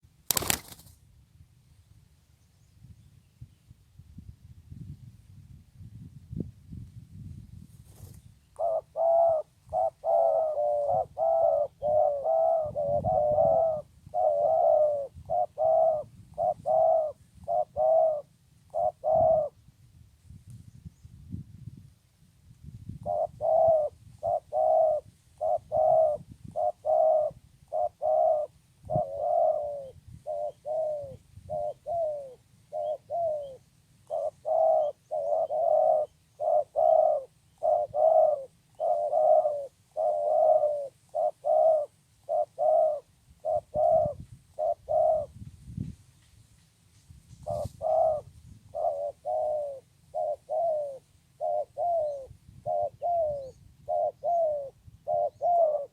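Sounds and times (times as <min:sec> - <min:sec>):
dove cooing: 0:08.5 - 0:19.7, 0:23.0 - 0:45.4, 0:47.4 - 0:55.9.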